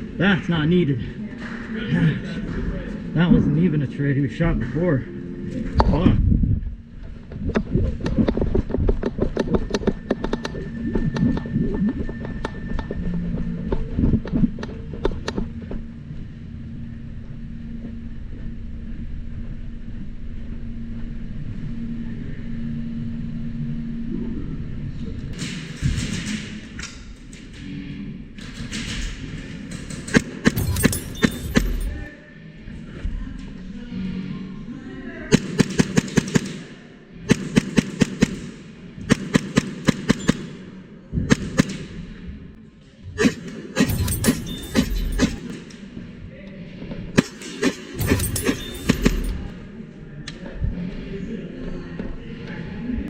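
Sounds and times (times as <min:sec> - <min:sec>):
motor drone with low rumble: 0:00.0 - 0:32.1
constant hum: 0:00.0 - 0:53.0
airsoft guns firing: 0:35.3 - 0:42.0.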